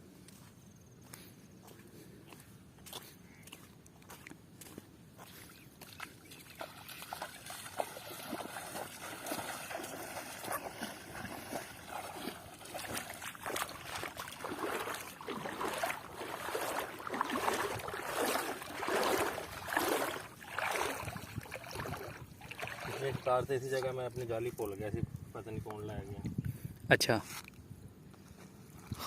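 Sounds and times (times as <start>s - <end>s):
water sloshing and splashing: 5.2s - 24.6s.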